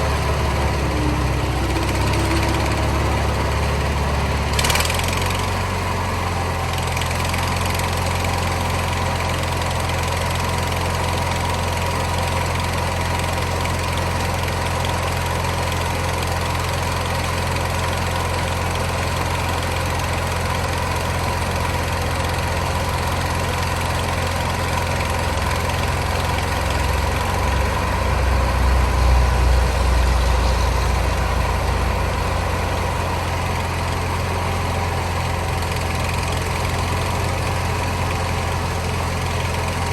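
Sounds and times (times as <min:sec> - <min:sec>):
garden tractor engine running: 0:00.0 - 0:39.9
deep loud rumble: 0:27.4 - 0:33.4.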